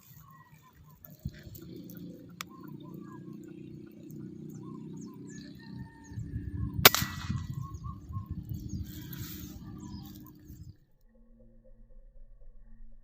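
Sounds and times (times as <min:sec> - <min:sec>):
birds chirping: 0:00.0 - 0:10.8
low rumbling noise: 0:00.8 - 0:13.0
air rifle shot: 0:06.8 - 0:07.9.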